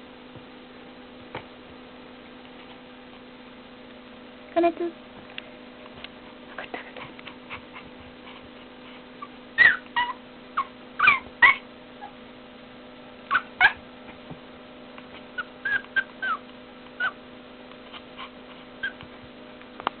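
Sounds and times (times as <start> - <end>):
young pet crying: 9.2 - 12.2, 13.3 - 13.8, 15.4 - 16.4, 17.0 - 17.2.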